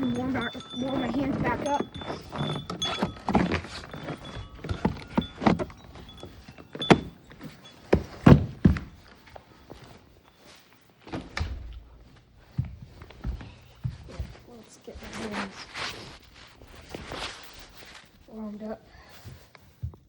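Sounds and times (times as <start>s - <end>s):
door knocks and thumps: 7.9s - 9.0s.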